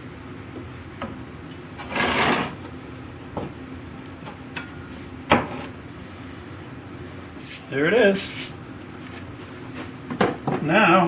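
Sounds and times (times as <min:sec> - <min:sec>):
steady low hum: 0:00.0 - 0:11.0
wood scraping: 0:01.8 - 0:02.6.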